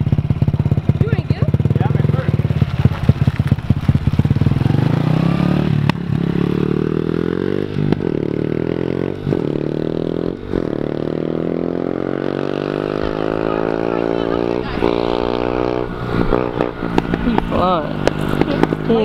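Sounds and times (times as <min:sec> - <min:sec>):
dirt bike engine accelerating: 0:00.0 - 0:19.0.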